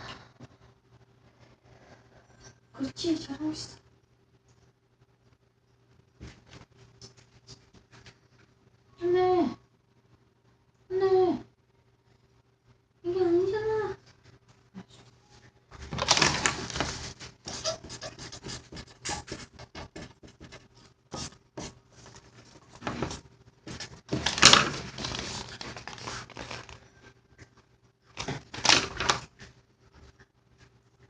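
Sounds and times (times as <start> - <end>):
scratching and rubbing on surface: 16.5 - 26.8.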